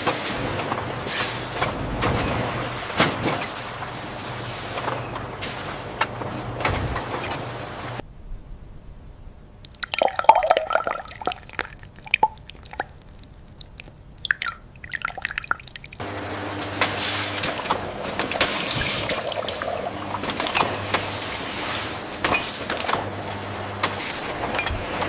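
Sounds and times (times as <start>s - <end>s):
machine humming and hissing: 0.0s - 8.0s, 16.0s - 25.0s
liquid dripping and splashing: 9.6s - 16.0s, 17.4s - 21.1s.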